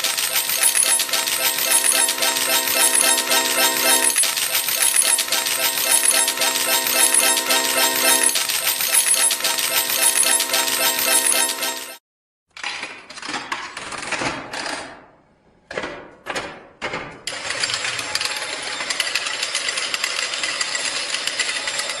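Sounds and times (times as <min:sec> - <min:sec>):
coins clattering into tray: 0:00.0 - 0:11.9
slot machine jingle: 0:00.0 - 0:12.0.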